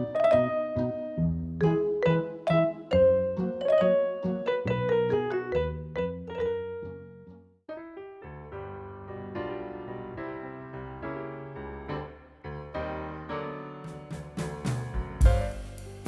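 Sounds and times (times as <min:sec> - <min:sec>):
piano chords: 0:00.0 - 0:16.0
drum hits: 0:13.9 - 0:16.0.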